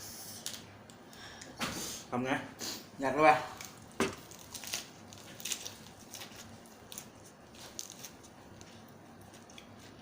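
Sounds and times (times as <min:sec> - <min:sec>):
person eating crunchy food: 0:03.6 - 0:10.0.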